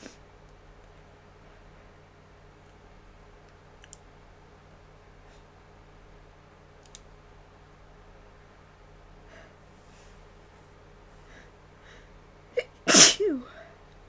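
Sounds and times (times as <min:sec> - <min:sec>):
faint clicks: 0:02.6 - 0:04.1, 0:06.8 - 0:07.1.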